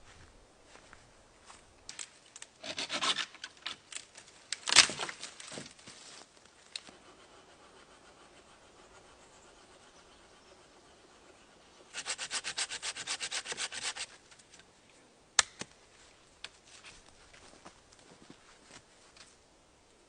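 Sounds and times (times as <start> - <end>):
wood scraping and rubbing: 11.9 - 14.2.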